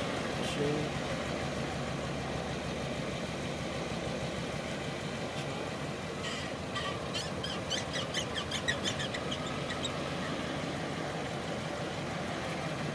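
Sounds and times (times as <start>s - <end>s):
car engine idling: 0.0s - 12.9s
rapid high squeaking: 6.8s - 10.0s.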